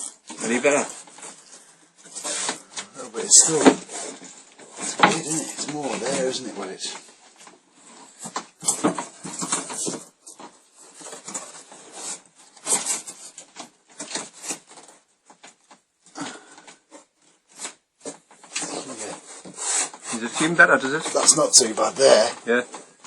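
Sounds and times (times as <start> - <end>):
wooden pieces scraping and knocking: 0.0 - 23.0.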